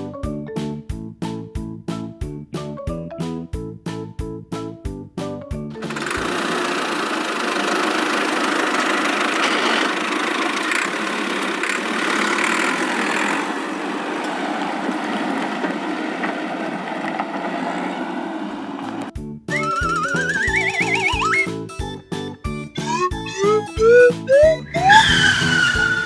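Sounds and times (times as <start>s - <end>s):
rough vehicle engine running: 5.8s - 17.9s, 18.8s - 26.0s.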